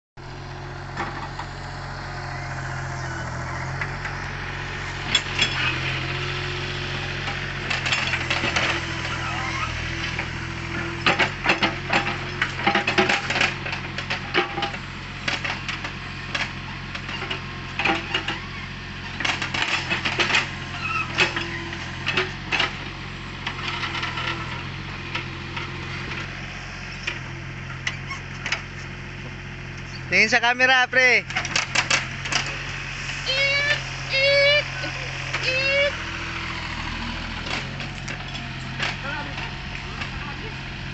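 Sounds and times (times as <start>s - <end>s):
excavator diesel engine running: 0.2s - 40.9s
sharp metallic clanks and rattles: 5.0s - 5.8s, 7.2s - 9.2s, 10.0s - 18.4s, 31.3s - 32.8s, 37.3s - 40.3s.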